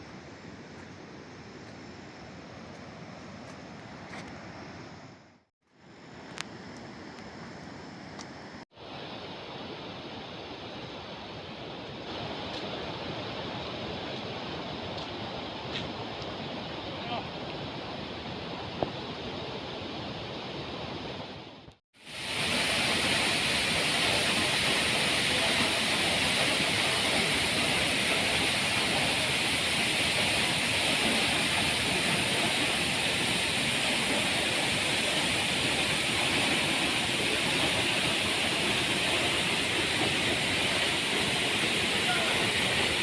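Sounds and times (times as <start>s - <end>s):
waterfall rushing: 22.0s - 43.0s.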